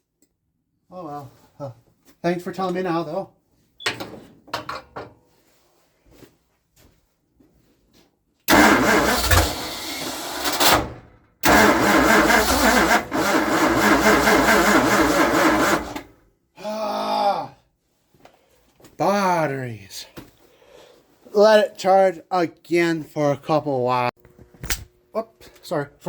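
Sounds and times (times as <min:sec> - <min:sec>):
starter motor cranking engine: 0:08.5 - 0:16.2.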